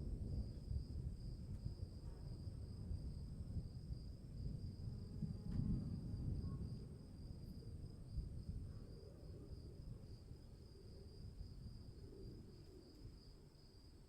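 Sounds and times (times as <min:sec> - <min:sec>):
storm rumble: 0:00.0 - 0:08.7.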